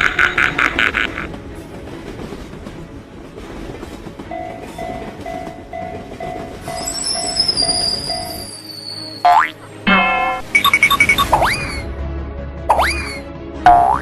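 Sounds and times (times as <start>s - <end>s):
train rumbling on rails: 0.0s - 9.8s
railroad crossing bell dinging: 4.3s - 9.3s.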